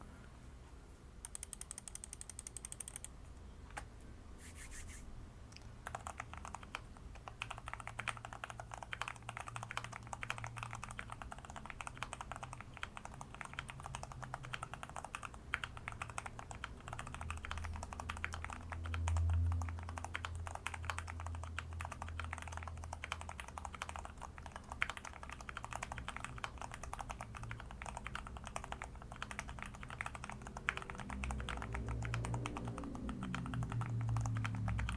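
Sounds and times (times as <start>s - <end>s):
fast mechanical keyboard typing: 1.2s - 3.1s, 5.8s - 34.9s.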